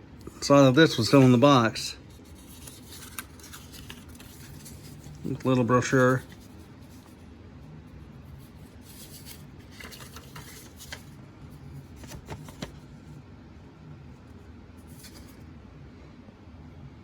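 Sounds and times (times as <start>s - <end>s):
low steady hum: 0.0s - 17.0s
paper rustling: 0.2s - 7.2s, 8.2s - 13.2s, 14.8s - 15.4s.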